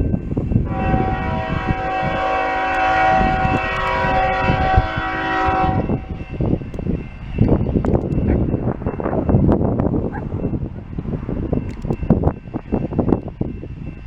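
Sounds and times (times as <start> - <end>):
low train rumble: 0.0 - 14.0
locomotive air horn: 0.6 - 6.2.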